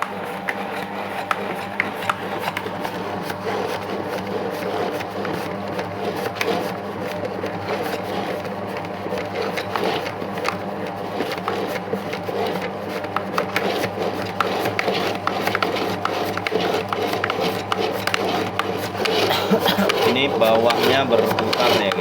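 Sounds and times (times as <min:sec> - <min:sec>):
dough mixer motor humming: 0:00.0 - 0:22.0.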